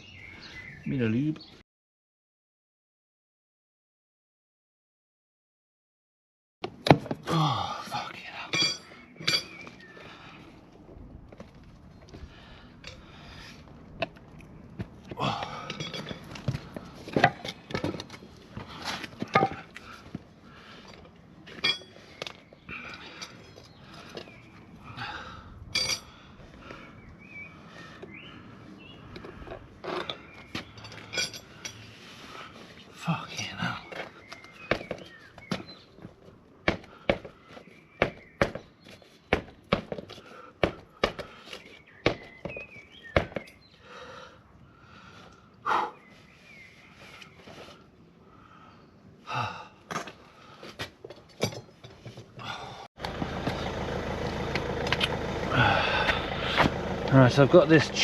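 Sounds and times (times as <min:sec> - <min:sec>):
person gasping and breathing hard: 0:07.2 - 0:08.0, 0:15.1 - 0:15.8, 0:24.8 - 0:27.0, 0:48.4 - 0:50.7, 0:52.4 - 0:53.0, 0:55.5 - 0:56.7
tyre levers clinking on wheel rim: 0:08.5 - 0:10.0, 0:14.0 - 0:20.2, 0:25.7 - 0:26.2, 0:29.1 - 0:31.9, 0:49.9 - 0:52.4.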